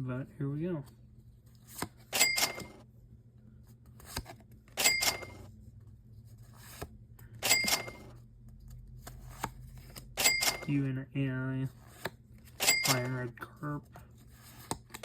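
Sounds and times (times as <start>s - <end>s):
papery card slide: 6.4s - 6.9s.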